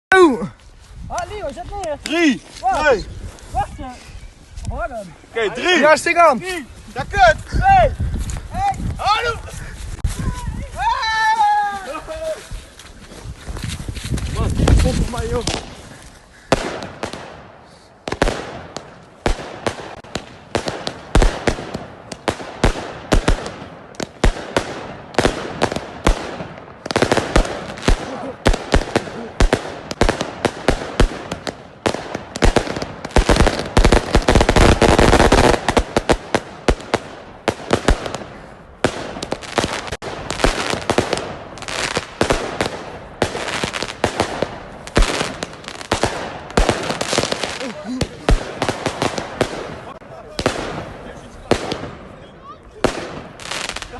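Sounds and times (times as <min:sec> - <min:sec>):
fireworks shots and bangs: 0:14.6 - 0:15.8, 0:16.5 - 0:53.9.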